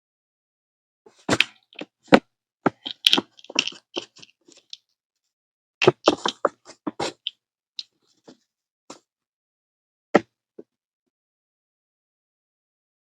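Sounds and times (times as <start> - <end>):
lice crushed with crunchy pops: 2.8 - 4.8.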